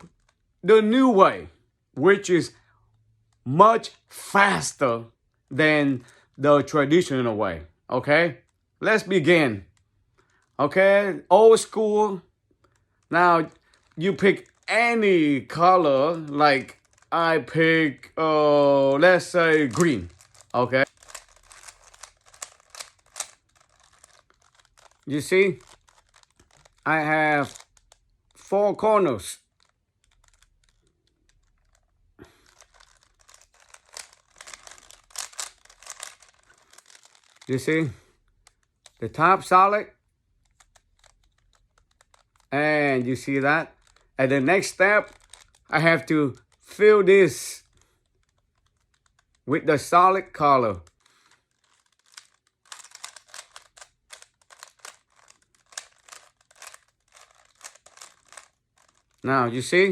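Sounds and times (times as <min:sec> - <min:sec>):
plastic puzzle cube clicking: 0:12.6 - 0:14.7, 0:16.1 - 0:17.1, 0:19.4 - 0:28.5, 0:29.4 - 0:39.0, 0:40.3 - 0:42.5, 0:43.1 - 0:46.7, 0:47.6 - 0:49.4, 0:50.7 - 0:59.2.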